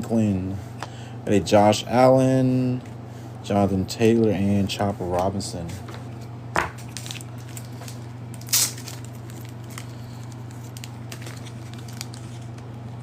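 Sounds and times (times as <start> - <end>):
low electrical hum: 0.0 - 13.0
card pack tearing: 6.8 - 13.0
light crinkles and clicks: 6.9 - 13.0.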